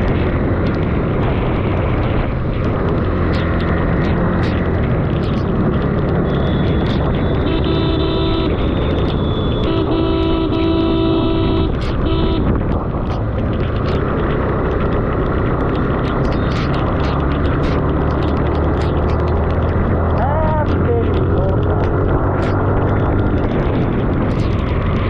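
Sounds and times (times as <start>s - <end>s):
motorcycle engine: 0.0s - 25.0s
wind rushing on microphone: 0.0s - 25.0s
vehicle horn honking: 7.3s - 8.6s, 9.2s - 12.5s.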